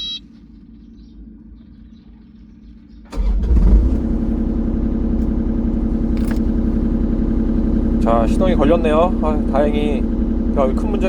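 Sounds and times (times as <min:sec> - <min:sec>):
diesel engine starting and idling: 0:02.9 - 0:11.0.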